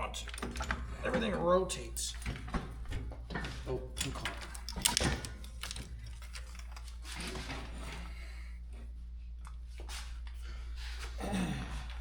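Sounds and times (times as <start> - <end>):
metal parts scraping and knocking: 3.6 - 8.0.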